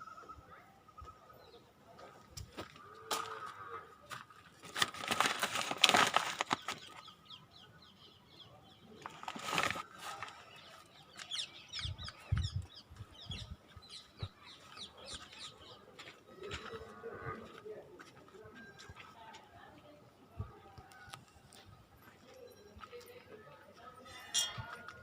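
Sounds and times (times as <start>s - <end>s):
loud rustling noise: 4.6s - 6.9s, 9.0s - 10.4s
birds chirping: 6.4s - 19.2s.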